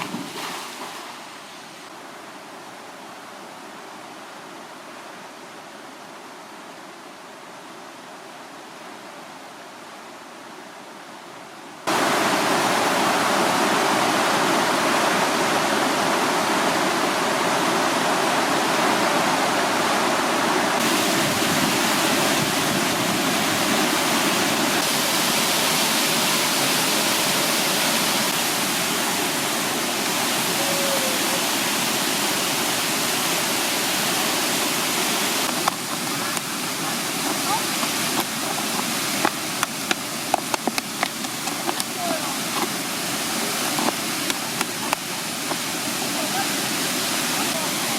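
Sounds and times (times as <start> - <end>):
waterfall pouring over rock: 20.7 - 47.9.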